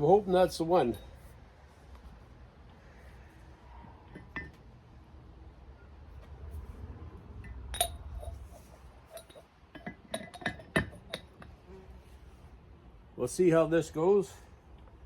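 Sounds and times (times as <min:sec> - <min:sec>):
steel rings clinking: 0:07.5 - 0:11.4.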